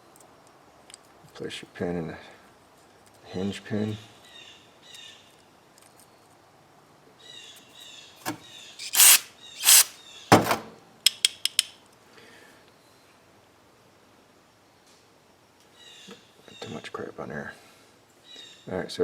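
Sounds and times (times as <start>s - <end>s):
short loud hissing blasts: 8.8s - 10.0s.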